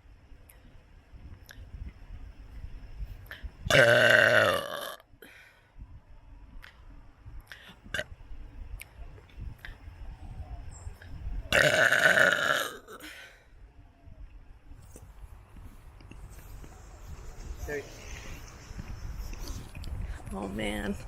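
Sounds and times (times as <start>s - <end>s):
person burping: 3.7s - 5.0s, 11.5s - 13.0s.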